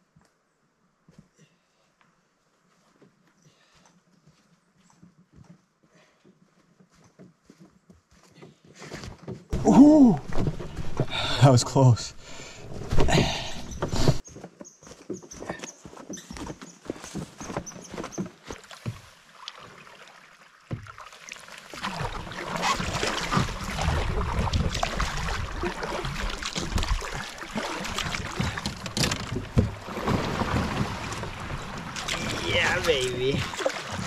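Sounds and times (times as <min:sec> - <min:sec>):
paddle splashing in water: 0:18.2 - 0:34.0
paddle knocking on hull: 0:22.2 - 0:34.0.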